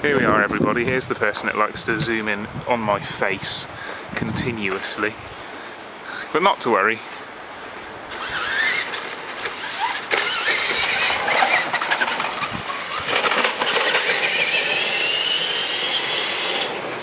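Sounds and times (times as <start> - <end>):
tyres on gravel: 4.3 - 17.0
toy truck motor whining: 8.1 - 17.0.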